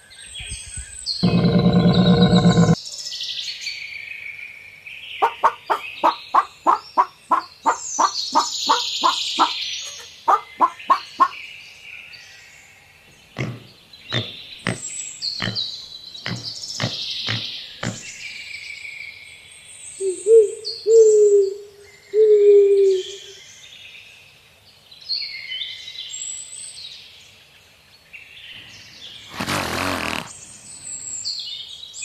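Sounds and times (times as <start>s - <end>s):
birds chirping and trilling: 0.0s - 4.1s, 5.0s - 24.3s
loud low animal call: 1.2s - 2.8s.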